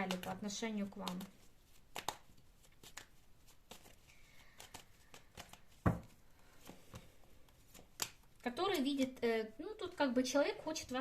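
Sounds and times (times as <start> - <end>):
cards shuffling: 0.0 - 9.2
cards thumping on table: 4.6 - 7.1.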